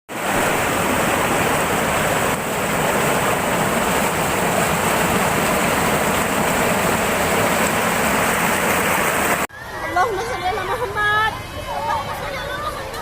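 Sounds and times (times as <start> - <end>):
floodwater rushing: 0.1 - 9.5.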